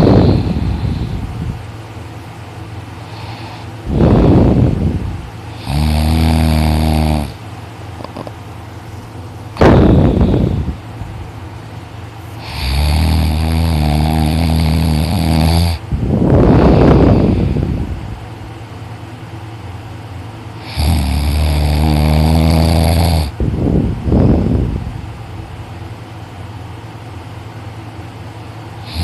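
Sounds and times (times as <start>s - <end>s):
boy snoring loudly: 0.0s - 1.2s, 5.5s - 7.4s, 12.4s - 15.8s, 20.6s - 23.4s.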